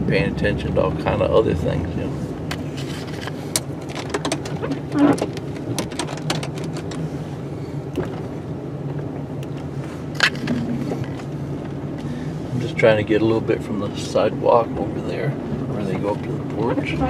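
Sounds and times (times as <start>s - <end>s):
truck engine running: 0.0s - 17.0s
clicks and knocks: 2.5s - 7.0s.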